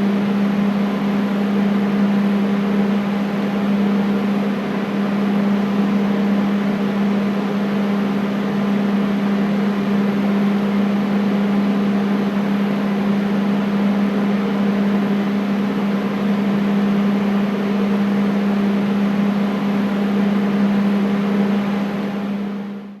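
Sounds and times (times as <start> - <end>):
air conditioner humming: 0.0 - 23.0.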